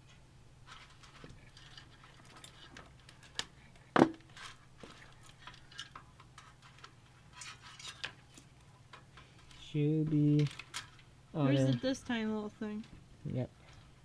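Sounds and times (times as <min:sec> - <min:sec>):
hands handling cables: 0:00.1 - 0:11.1.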